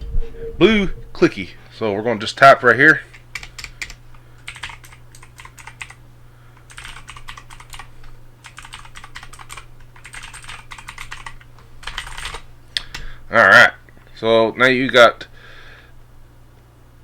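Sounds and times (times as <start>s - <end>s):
clicky keyboard typing: 3.1s - 6.0s, 6.7s - 12.4s.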